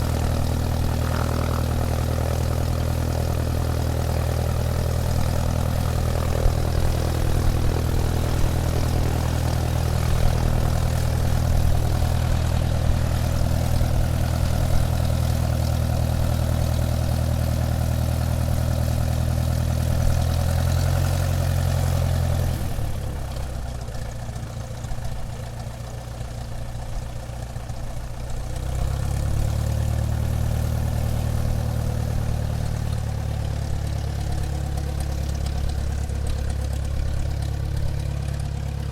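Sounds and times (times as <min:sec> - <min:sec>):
airplane engine humming: 0:00.0 - 0:19.1.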